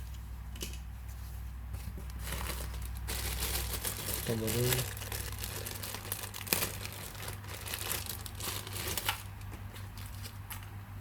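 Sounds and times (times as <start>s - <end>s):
packaging crinkling: 2.1s - 10.6s.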